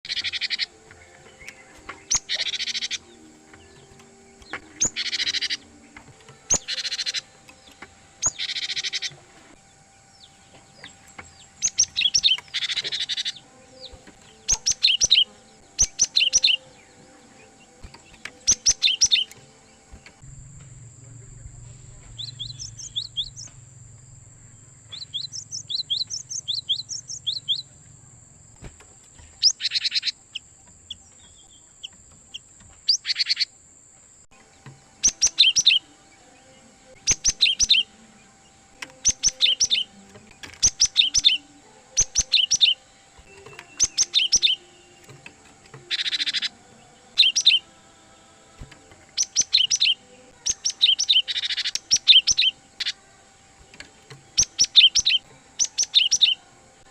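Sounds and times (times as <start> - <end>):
bird harsh chattering: 0.0 - 3.2, 4.5 - 5.8, 6.5 - 7.5, 8.2 - 9.2, 11.5 - 16.7, 17.9 - 19.4, 22.2 - 27.8, 29.4 - 33.6, 37.0 - 37.9, 38.9 - 39.9, 40.6 - 42.8, 43.6 - 44.6, 45.8 - 47.7, 49.2 - 53.0
bird whistling song: 0.0 - 20.3, 21.6 - 28.1, 29.2 - 33.5, 34.6 - 47.8, 48.6 - 56.9.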